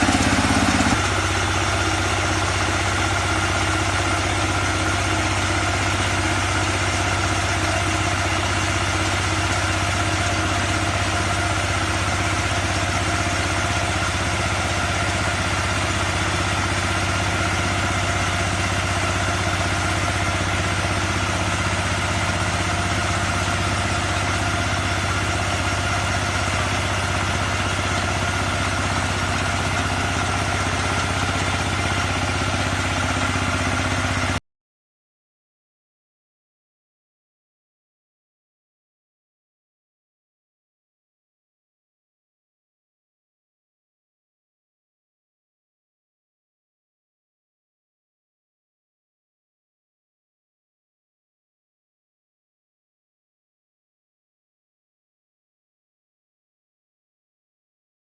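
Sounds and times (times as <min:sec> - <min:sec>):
diesel engine running: 0:00.0 - 0:34.4.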